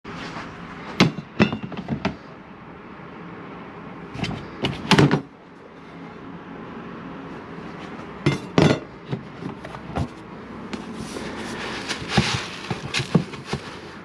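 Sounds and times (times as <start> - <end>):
sharp knocks and clunks: 1.0 - 2.2, 4.2 - 5.3, 12.0 - 13.8.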